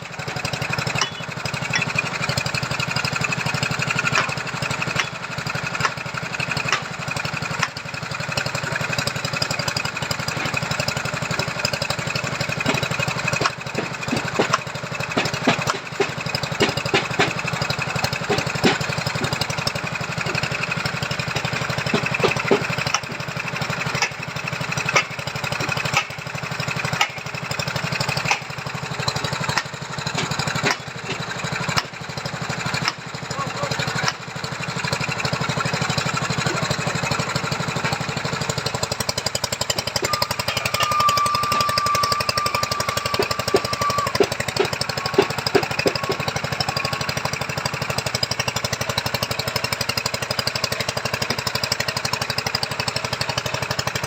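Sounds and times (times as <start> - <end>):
small petrol engine running: 0.0 - 54.0
sharp knocks: 12.6 - 14.6, 15.2 - 17.4, 18.3 - 19.4, 21.9 - 23.1, 43.1 - 46.3.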